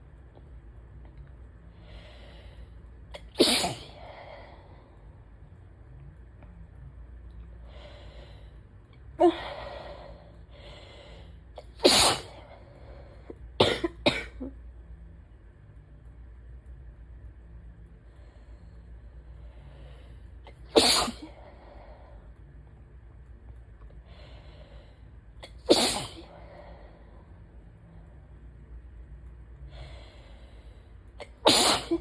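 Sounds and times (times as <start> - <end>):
woman sneezing: 20.8 - 21.2, 25.7 - 26.2, 31.5 - 32.0.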